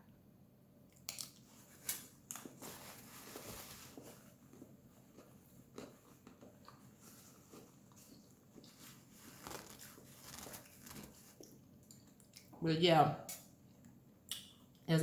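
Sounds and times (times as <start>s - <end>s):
person chewing: 4.5s - 12.6s.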